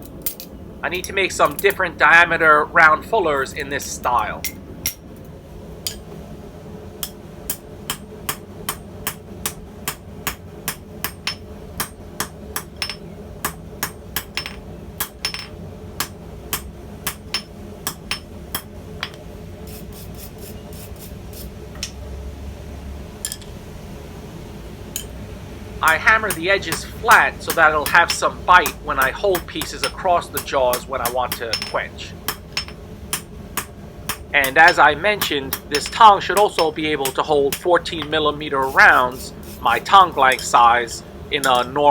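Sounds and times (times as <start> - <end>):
hammer striking steel on anvil: 5.8 - 6.1, 7.0 - 19.2, 25.8 - 41.8.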